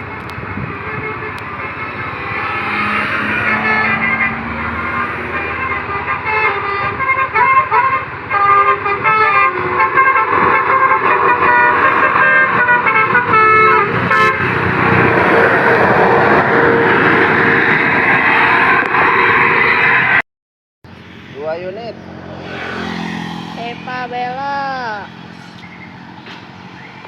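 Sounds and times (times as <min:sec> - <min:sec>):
bus horn playing a tune: 0:00.0 - 0:17.4
loud steady rushing noise: 0:00.0 - 0:20.2, 0:20.9 - 0:27.0.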